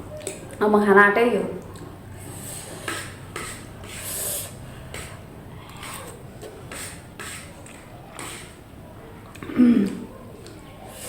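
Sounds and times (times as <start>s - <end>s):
person slurping noodles: 2.2s - 5.2s
sharp breathing: 2.2s - 5.2s.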